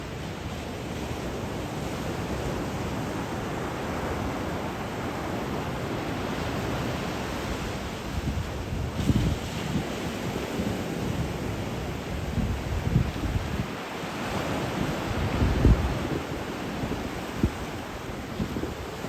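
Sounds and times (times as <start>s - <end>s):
sea waves washing onto shore: 0.0s - 19.0s
wind buffeting microphone: 6.2s - 19.0s.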